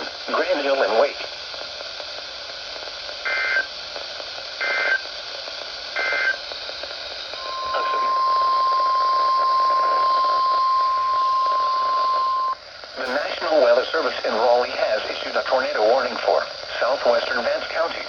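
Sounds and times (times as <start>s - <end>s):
radio hiss: 0.0s - 18.0s
steady warning alarm tone: 7.3s - 13.6s
screeching digital bursts: 7.4s - 13.4s.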